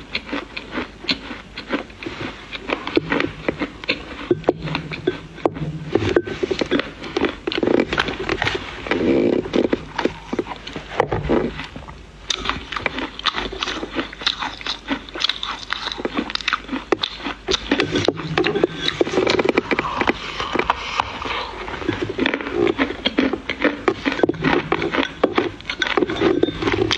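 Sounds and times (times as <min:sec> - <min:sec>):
dry clay crunching being chewed: 0:00.0 - 0:26.9.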